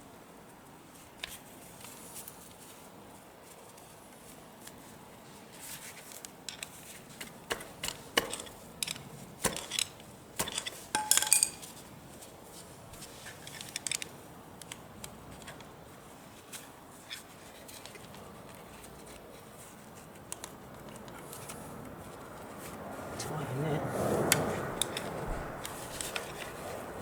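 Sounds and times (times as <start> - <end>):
metal tools clinking: 8.2 - 11.8.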